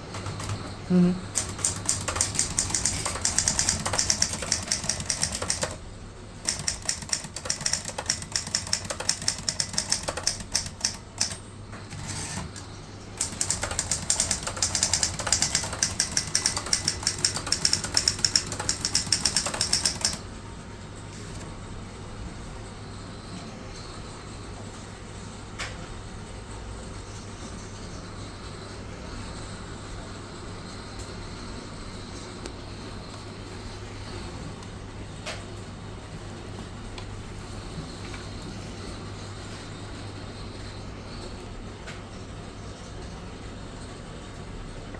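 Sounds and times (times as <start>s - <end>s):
manual typewriter keystrokes: 0.0s - 5.8s, 6.4s - 20.3s.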